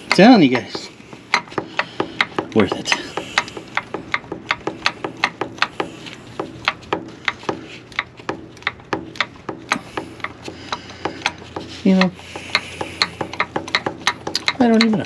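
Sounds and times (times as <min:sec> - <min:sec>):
ratchet wrench clicking: 0:00.0 - 0:11.4, 0:12.4 - 0:15.0.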